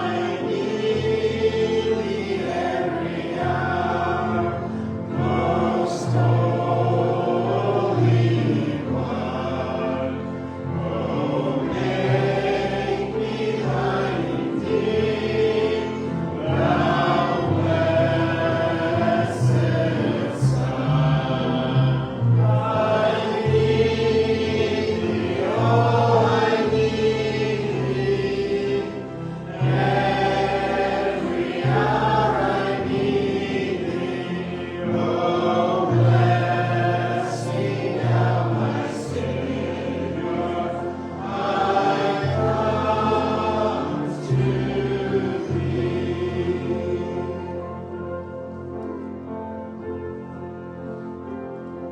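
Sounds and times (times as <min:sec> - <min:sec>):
group singing a hymn: 0:00.0 - 0:49.8.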